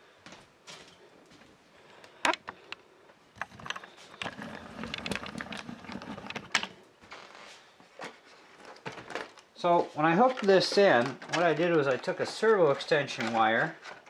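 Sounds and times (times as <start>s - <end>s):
plastic parts clicking and rattling: 3.4s - 6.8s, 10.2s - 14.0s.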